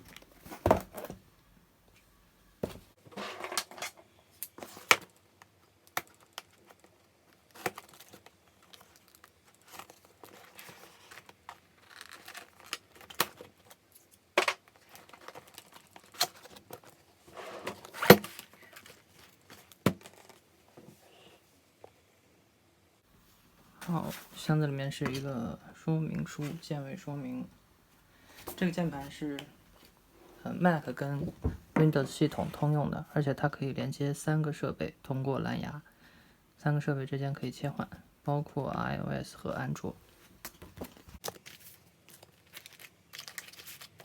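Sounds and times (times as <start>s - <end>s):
cardboard rustling and tearing: 40.6s - 44.0s.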